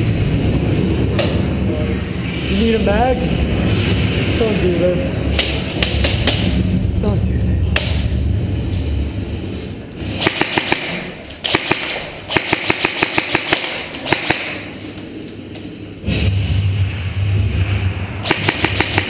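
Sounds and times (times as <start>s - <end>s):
airsoft guns firing: 10.2s - 14.8s, 18.2s - 19.0s.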